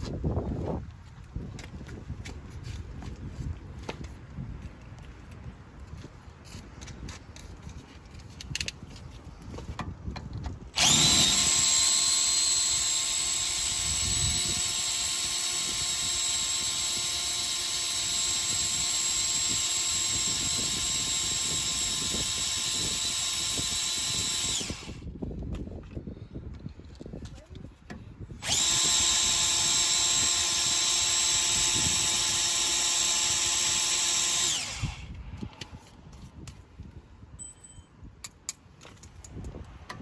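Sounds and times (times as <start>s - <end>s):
electric drill whining: 10.8s - 25.1s, 28.4s - 35.8s.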